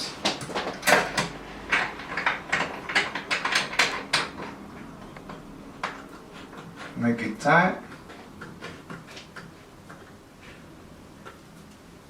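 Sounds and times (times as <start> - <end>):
plastic parts clicking and knocking: 0.2 - 4.6.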